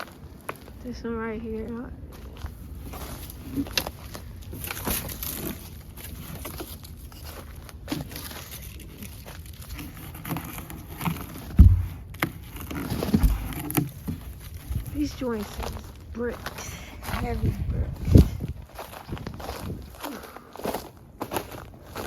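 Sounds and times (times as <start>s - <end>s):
tent cover crinkling: 2.2s - 16.6s
heavy thump: 11.5s - 12.1s, 13.0s - 13.6s
knocks: 11.6s - 12.1s.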